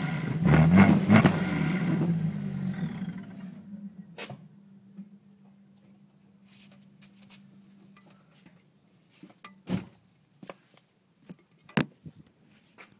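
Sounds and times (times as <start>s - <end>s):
handling knocks and clicks: 7.2s - 12.9s.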